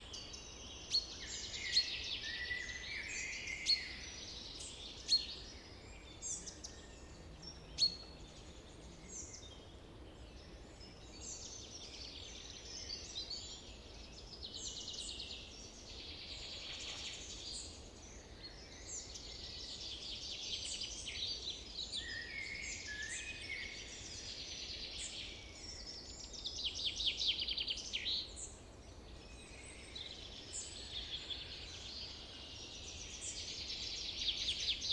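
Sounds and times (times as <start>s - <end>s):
birds calling and singing: 16.4s - 34.9s.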